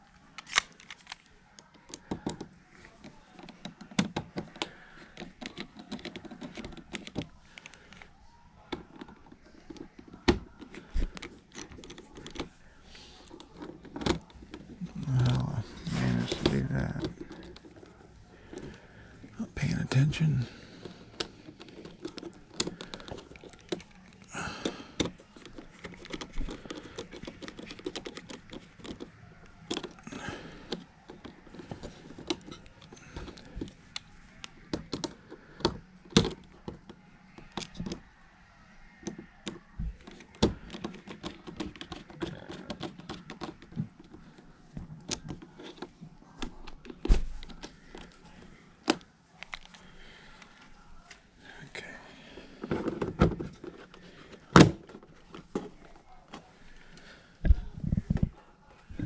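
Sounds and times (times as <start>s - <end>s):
screwdriver and plastic clicks: 0.4s - 8.1s, 21.1s - 30.0s.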